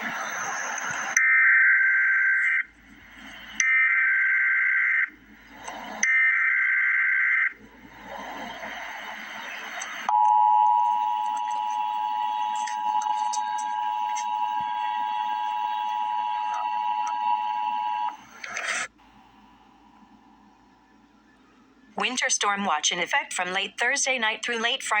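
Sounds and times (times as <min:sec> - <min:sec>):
rasping digital data tones: 0:00.0 - 0:18.9
two-tone attention signal: 0:10.1 - 0:18.2.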